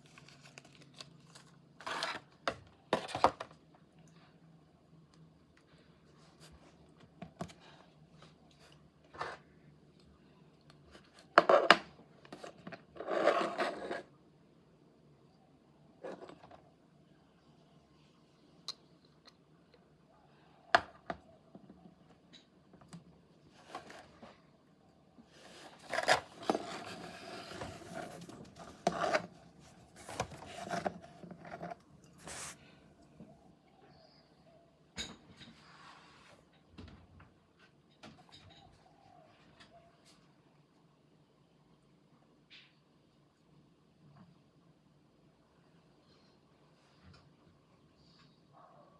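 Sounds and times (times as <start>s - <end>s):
packaging clicks and scrapes: 25.3s - 32.7s
packaging rubbing and scraping: 25.3s - 32.7s.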